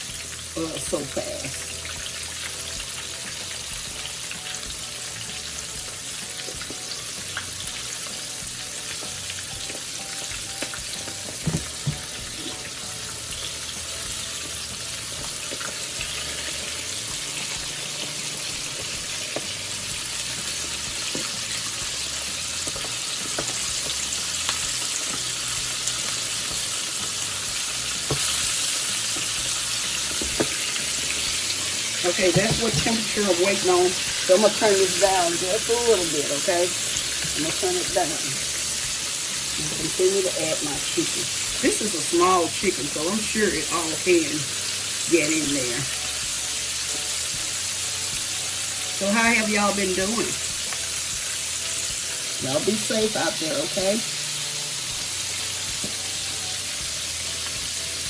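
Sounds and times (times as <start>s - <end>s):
chicken sizzling in hot oil: 0.0s - 58.0s
oil popping: 14.3s - 34.6s.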